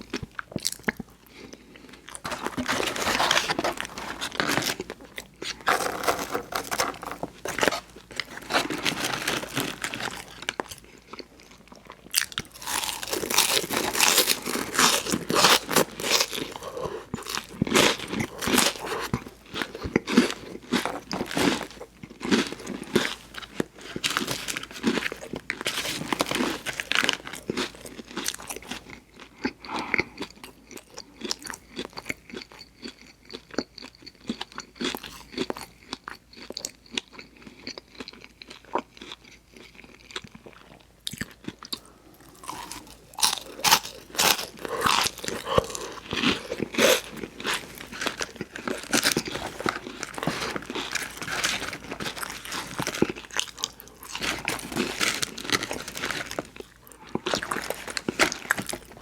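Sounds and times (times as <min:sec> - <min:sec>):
wet chewing: 0:00.4 - 0:21.3, 0:39.0 - 0:59.0
crisp crunching bites: 0:02.1 - 0:28.9, 0:41.1 - 0:59.0.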